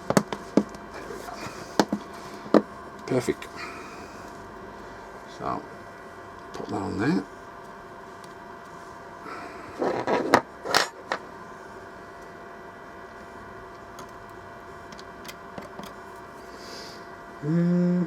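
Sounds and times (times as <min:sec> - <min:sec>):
steady electrical hum: 0:00.0 - 0:18.0.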